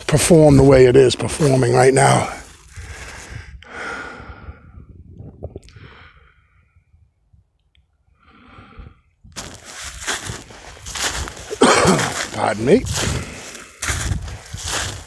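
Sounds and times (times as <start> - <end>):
person breathing out heavily: 2.7 - 4.9, 5.7 - 6.9, 8.2 - 9.1, 13.0 - 13.9.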